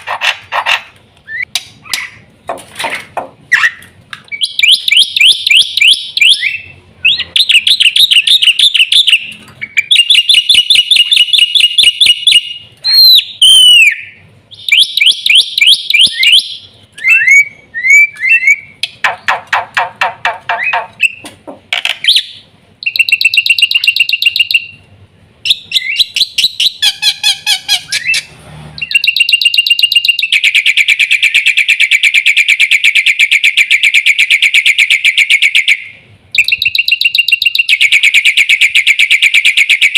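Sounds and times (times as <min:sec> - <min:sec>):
bird singing chattering notes: 0:03.5 - 0:24.8, 0:25.5 - 0:32.0, 0:36.4 - 0:39.9.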